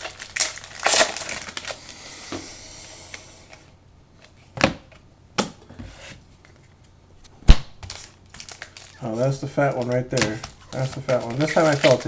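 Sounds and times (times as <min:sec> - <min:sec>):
foil wrapper crinkling: 0:00.0 - 0:02.0, 0:07.9 - 0:12.0.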